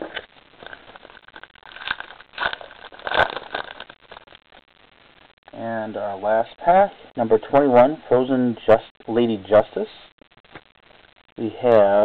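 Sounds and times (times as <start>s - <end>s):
wrapper crinkling and tearing: 0.0s - 4.4s.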